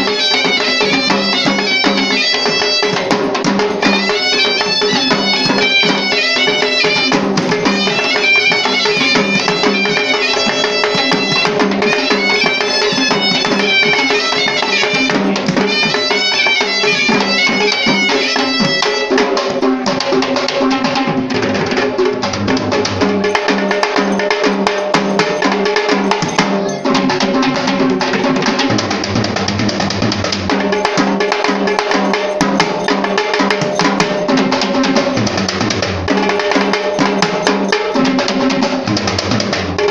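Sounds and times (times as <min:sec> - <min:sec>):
shrill reed pipe melody: 0:00.0 - 0:19.2, 0:23.0 - 0:27.1, 0:30.5 - 0:35.5, 0:36.1 - 0:38.6
drum ensemble: 0:00.0 - 0:39.9.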